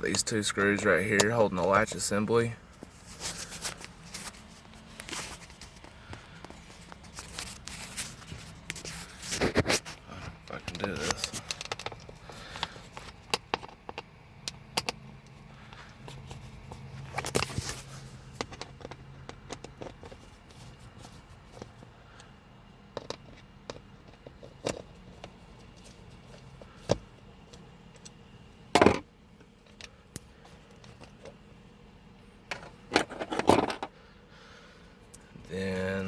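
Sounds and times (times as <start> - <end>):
plastic parts being handled: 2.8 - 21.9, 32.5 - 33.9.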